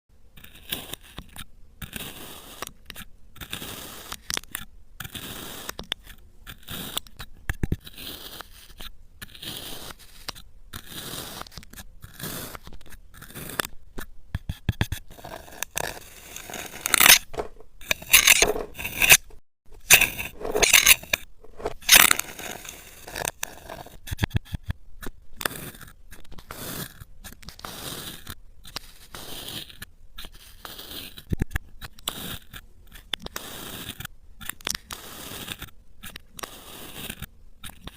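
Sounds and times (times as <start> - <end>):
sand being cut and scraped: 0.5 - 2.8, 3.4 - 4.4, 5.1 - 5.9, 6.5 - 7.1, 7.8 - 13.7, 15.1 - 24.0, 25.5 - 31.3, 32.0 - 34.0, 34.6 - 35.7, 36.3 - 37.9.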